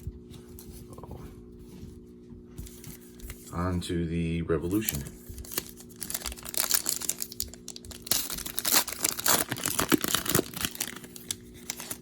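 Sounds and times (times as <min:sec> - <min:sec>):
wrapper crinkling and tearing: 0:04.7 - 0:12.0.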